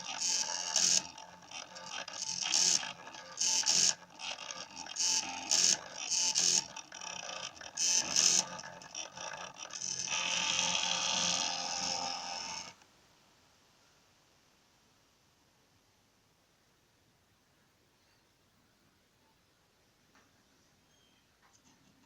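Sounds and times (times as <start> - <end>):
stepper motors whining: 0.0 - 12.8.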